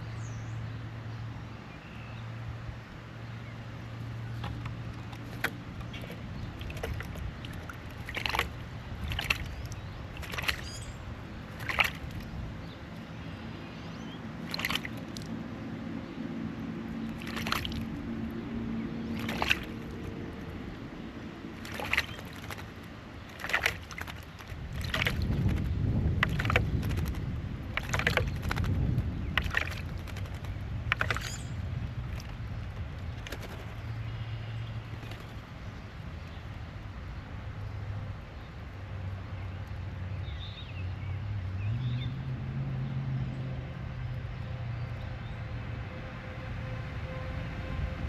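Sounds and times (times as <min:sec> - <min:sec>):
low steady hum: 0:00.0 - 0:40.0
water sloshing in a bowl: 0:04.2 - 0:12.8, 0:14.4 - 0:15.4, 0:16.9 - 0:20.5, 0:21.5 - 0:33.9
short sharp splashes: 0:04.3 - 0:12.4, 0:14.4 - 0:15.4, 0:17.0 - 0:18.0, 0:19.0 - 0:20.3, 0:21.6 - 0:32.5.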